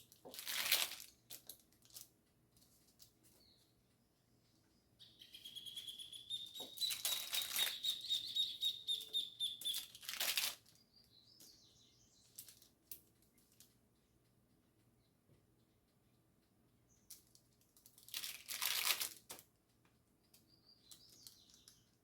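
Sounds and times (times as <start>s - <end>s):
bird trilling: 5.0s - 10.0s
rustling or flapping strokes: 6.5s - 8.1s, 9.6s - 10.7s.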